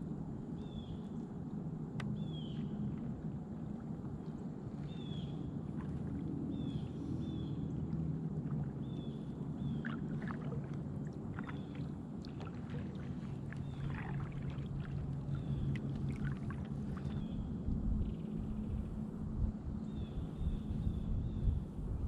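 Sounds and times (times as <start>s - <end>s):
low hum: 0.0s - 22.0s
paddle splashing water: 2.3s - 19.0s.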